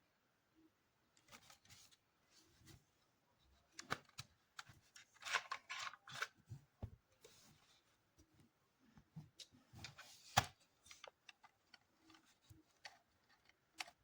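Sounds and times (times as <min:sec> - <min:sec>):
handling clicks and rustling: 0:09.0 - 0:14.0.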